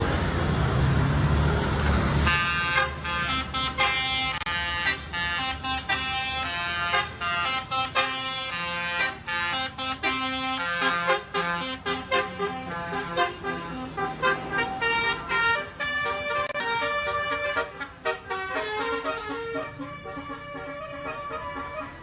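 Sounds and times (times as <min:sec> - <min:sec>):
musical bus horn playing tune: 0:02.2 - 0:22.0.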